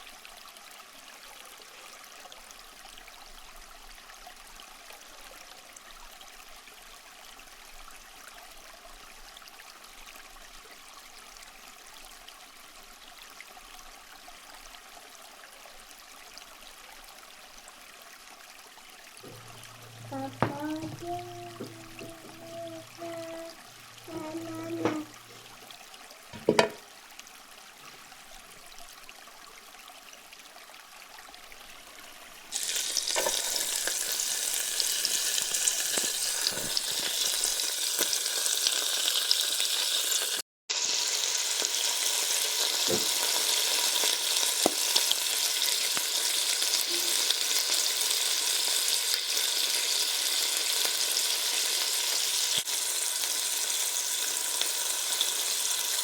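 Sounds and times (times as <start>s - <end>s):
food sizzling in hot oil: 32.5s - 56.0s.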